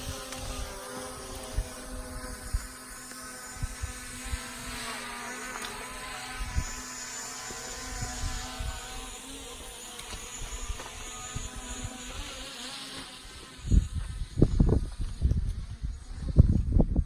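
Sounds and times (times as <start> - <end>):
droning motor hum: 0.0 - 17.0.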